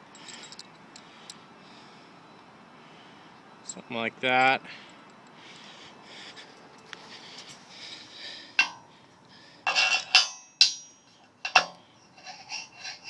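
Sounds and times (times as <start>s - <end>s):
metallic clanks and clinks: 0.0s - 1.4s, 8.6s - 8.8s, 9.6s - 13.0s.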